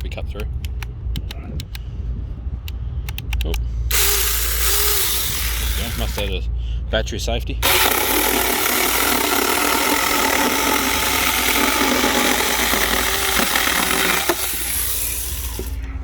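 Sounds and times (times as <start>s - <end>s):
electric chainsaw whizzing: 3.9s - 6.3s, 7.6s - 15.9s.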